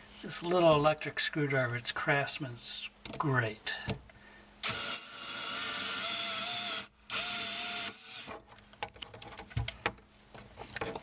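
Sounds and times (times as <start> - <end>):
electric screwdriver motor running: 4.6 - 8.3.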